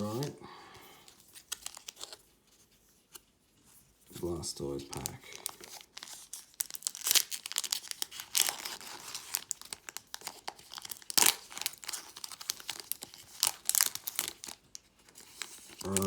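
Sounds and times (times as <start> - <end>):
foil wrapper tearing and crinkling: 1.3 - 2.2, 4.8 - 16.0.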